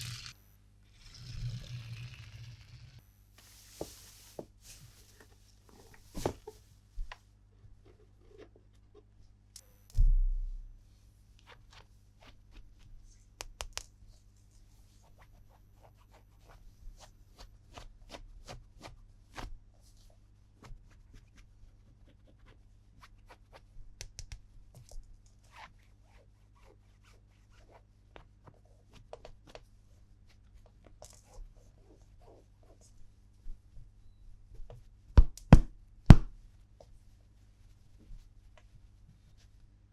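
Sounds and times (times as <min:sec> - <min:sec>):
faint low hum: 0:00.0 - 0:17.9.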